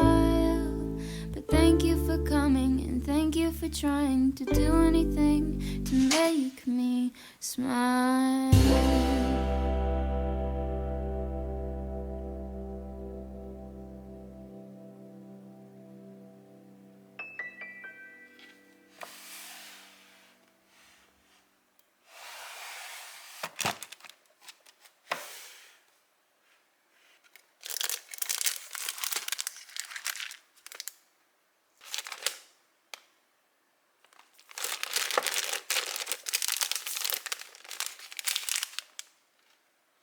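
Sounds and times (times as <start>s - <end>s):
crinkling and rustling: 22.7s - 25.9s, 26.5s - 31.1s, 31.8s - 33.1s, 34.0s - 39.7s.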